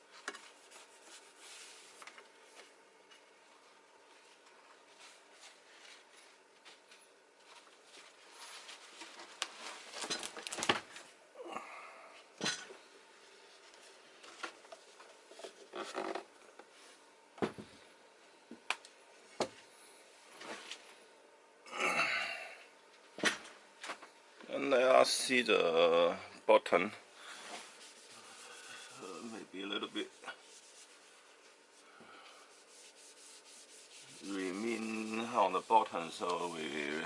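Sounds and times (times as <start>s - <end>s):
tissue paper rubbing: 0.1s - 2.0s, 7.4s - 10.6s, 27.2s - 37.0s.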